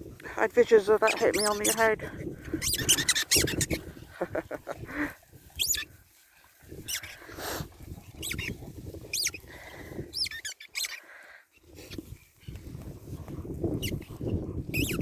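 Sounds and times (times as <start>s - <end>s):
dogs squeaking: 0.6s - 3.9s, 5.6s - 5.9s, 6.8s - 7.2s, 8.2s - 9.5s, 10.1s - 11.0s, 13.8s - 15.0s.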